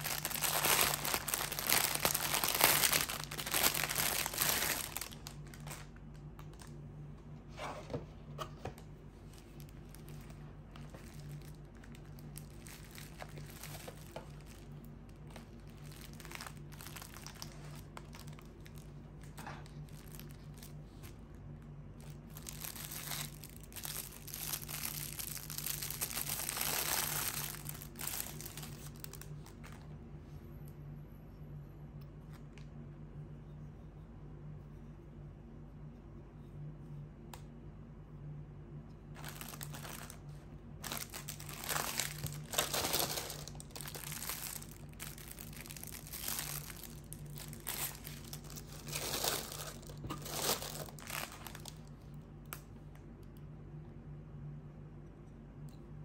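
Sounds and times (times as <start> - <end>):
crinkling rustling: 0.0 - 30.0, 39.2 - 52.0
low hum: 0.0 - 56.0.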